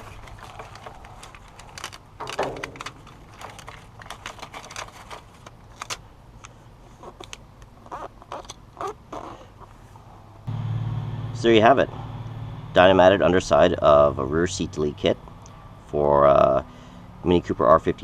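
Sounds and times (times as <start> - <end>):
handling clicks and knocks: 0.0 - 8.6.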